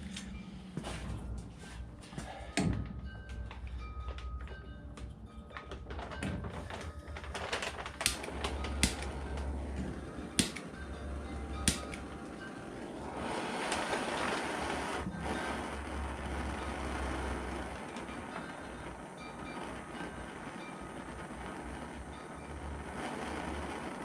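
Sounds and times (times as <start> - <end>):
steady hiss: 11.5 - 24.0.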